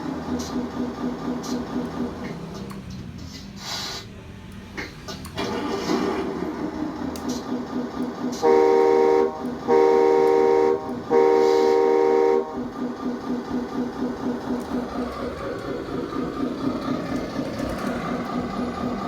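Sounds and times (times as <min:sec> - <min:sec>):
simulated diesel engine idling: 0:00.0 - 0:19.0
simulated air horn blasts: 0:08.3 - 0:12.9.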